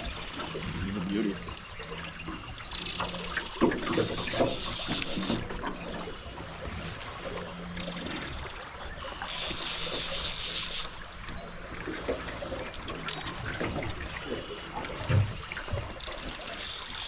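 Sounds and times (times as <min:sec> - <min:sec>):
river current splashing: 0:02.7 - 0:17.0.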